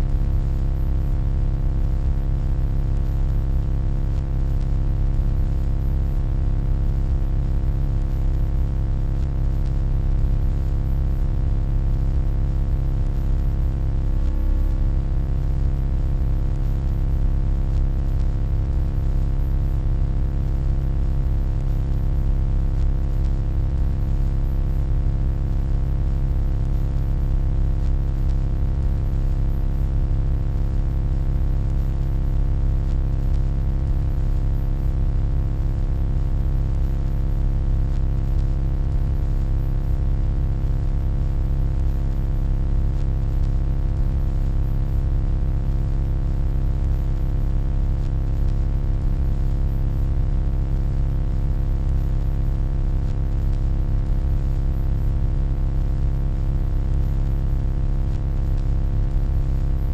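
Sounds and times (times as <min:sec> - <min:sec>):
electronic hum drone: 0:00.0 - 0:01.6, 0:04.1 - 0:27.2.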